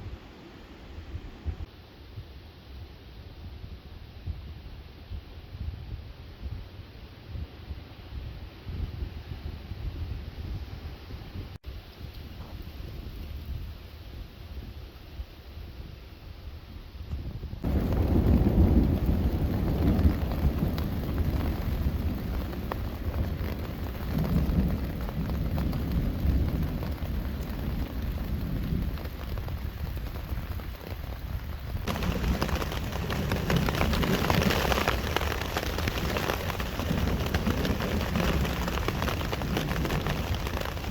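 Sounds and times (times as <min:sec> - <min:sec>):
deep rumble of thunder: 0:17.4 - 0:40.9
rain falling: 0:17.6 - 0:40.9.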